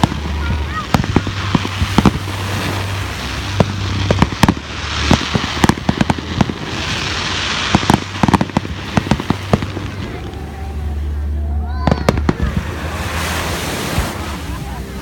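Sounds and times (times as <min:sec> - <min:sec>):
fireworks bangs and pops: 0:00.0 - 0:10.4, 0:11.8 - 0:13.0
crackling hiss: 0:00.0 - 0:15.0.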